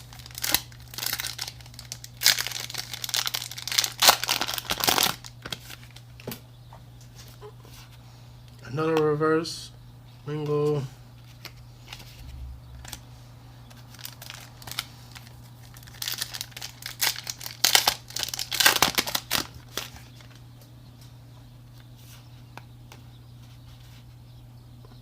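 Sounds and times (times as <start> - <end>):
foil pack crinkling: 0.0 - 6.4, 11.2 - 13.1, 13.7 - 20.4.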